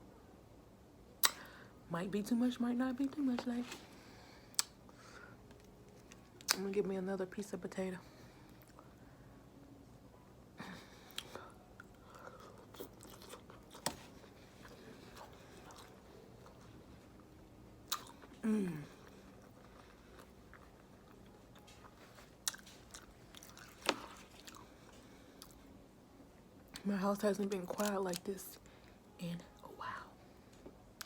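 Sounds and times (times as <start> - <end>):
mouth clicks and smacks: 1.2 - 1.4
person chewing food: 11.0 - 25.7.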